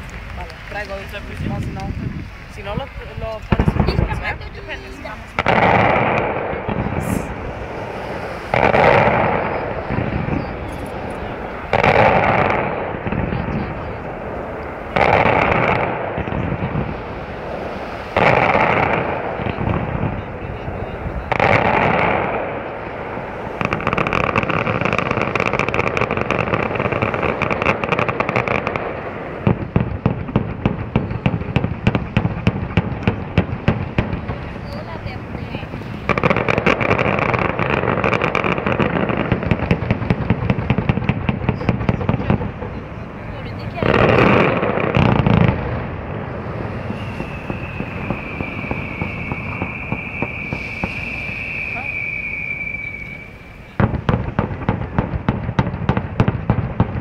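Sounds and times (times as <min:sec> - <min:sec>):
firework burst: 0:00.0 - 0:57.0
hissing and crackling fireworks: 0:00.0 - 0:57.0
rapid sharp firework bangs: 0:03.4 - 0:57.0
high steady whistle: 0:46.3 - 0:53.8.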